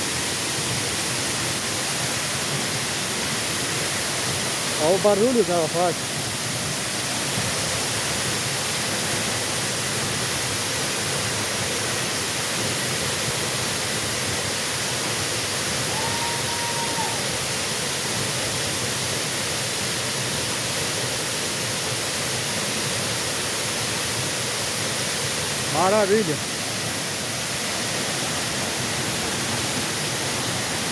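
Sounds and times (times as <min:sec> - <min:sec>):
waterfall rushing water: 0:00.0 - 0:30.9.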